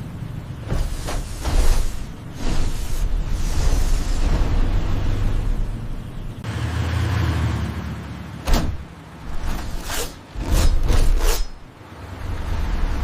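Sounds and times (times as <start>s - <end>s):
low rumble: 0.2s - 6.5s.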